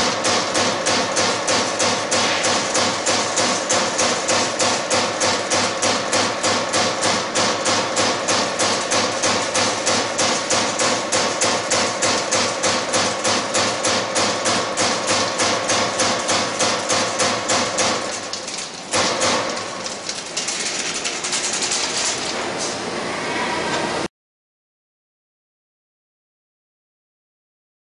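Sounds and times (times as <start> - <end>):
turret punch punching sheet metal: 0.0 - 22.4.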